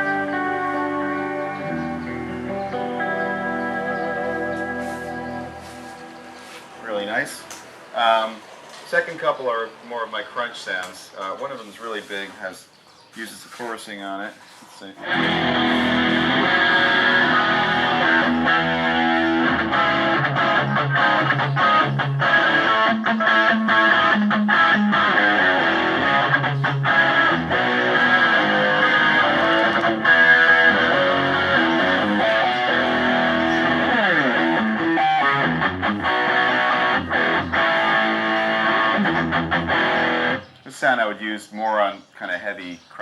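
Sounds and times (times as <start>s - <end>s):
distorted electric guitar: 0.0s - 11.2s, 15.0s - 40.6s.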